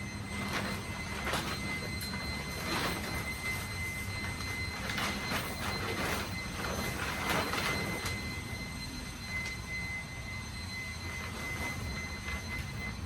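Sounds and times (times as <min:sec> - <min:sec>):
faint high whine: 0:00.0 - 0:13.0
fabric rustling and crinkling: 0:00.3 - 0:08.5.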